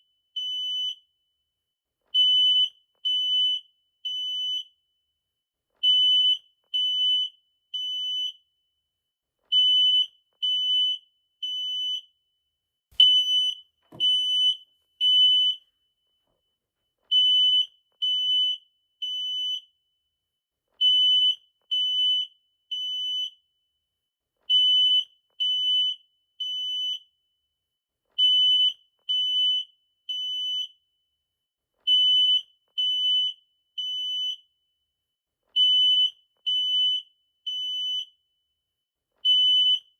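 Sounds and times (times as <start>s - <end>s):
smoke alarm beeping: 9.5s - 12.1s, 13.0s - 15.8s, 17.1s - 19.7s, 35.6s - 38.1s.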